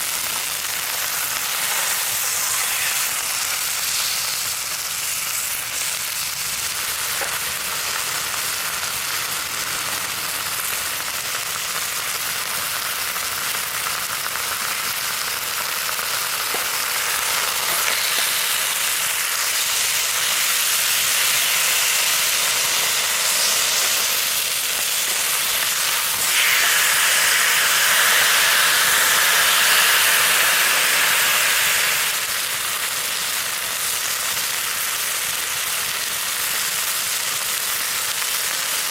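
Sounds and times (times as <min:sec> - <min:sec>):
chicken sizzling in a frying pan: 0:00.0 - 0:38.9.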